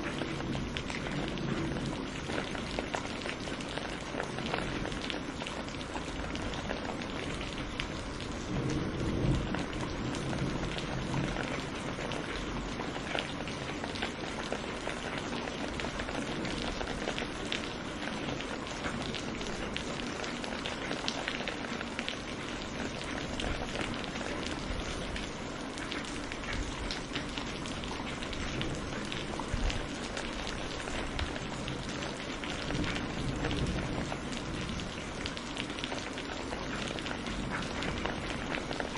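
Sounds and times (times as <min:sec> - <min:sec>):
steady rain falling: 0:00.0 - 0:38.9
distant thunder rumble: 0:00.1 - 0:05.2, 0:07.2 - 0:13.8, 0:31.0 - 0:35.2.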